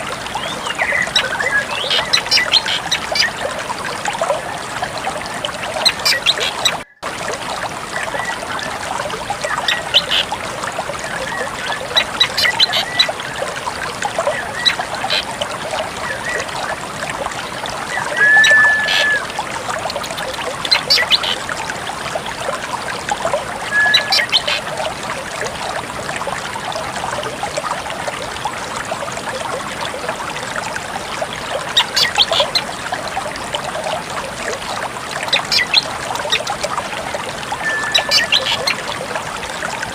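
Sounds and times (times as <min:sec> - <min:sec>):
trickle of running water: 0:00.0 - 0:39.9
bird whistles and chips: 0:37.7 - 0:38.6.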